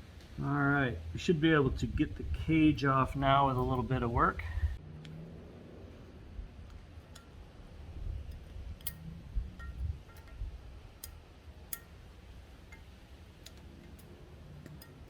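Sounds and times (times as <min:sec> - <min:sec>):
low handling rumble: 0:00.0 - 0:15.0
light metal clinks and taps: 0:08.3 - 0:10.4, 0:12.7 - 0:15.0.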